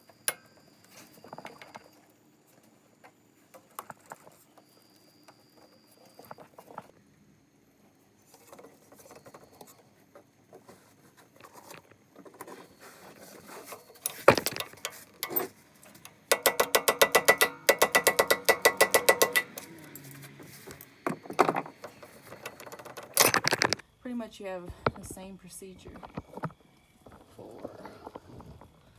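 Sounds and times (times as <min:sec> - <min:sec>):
socket ratchet clicking: 0:14.0 - 0:23.8
tools clicking while handled: 0:14.0 - 0:23.8.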